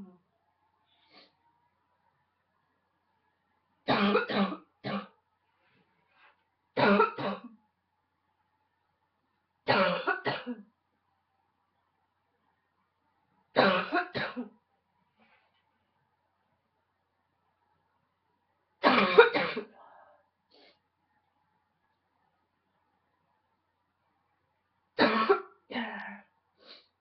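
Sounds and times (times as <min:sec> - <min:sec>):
woman's barking cough: 0:09.7 - 0:10.6, 0:18.8 - 0:19.7.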